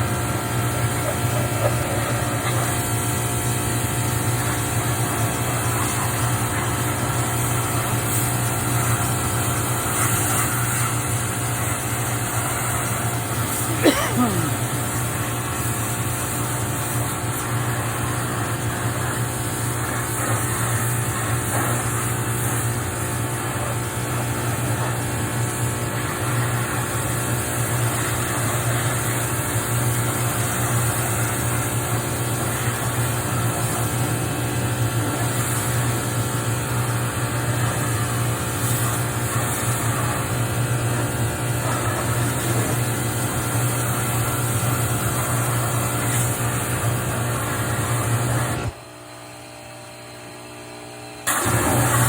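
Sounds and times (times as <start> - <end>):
water spray hissing: 0.0 - 48.7
pressure washer motor humming: 0.0 - 49.0, 51.2 - 52.0.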